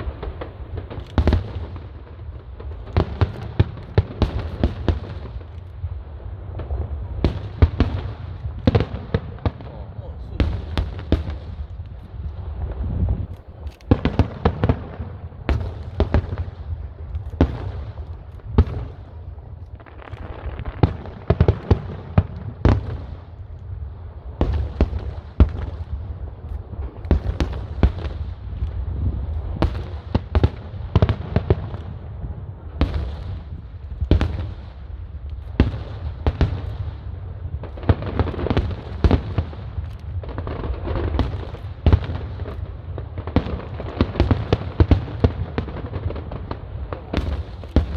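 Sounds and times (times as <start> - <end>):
fireworks bangs: 0.0 - 47.9
fireworks crackling: 0.0 - 47.9.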